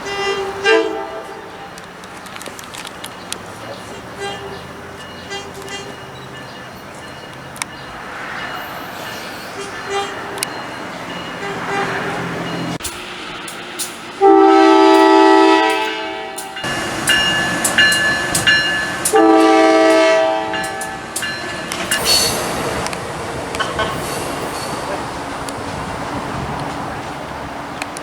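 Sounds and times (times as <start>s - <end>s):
train air horn chord: 0.0s - 1.8s, 9.5s - 10.4s, 11.4s - 13.0s, 14.2s - 17.3s, 19.1s - 21.0s
train wheels on rails: 0.0s - 28.0s.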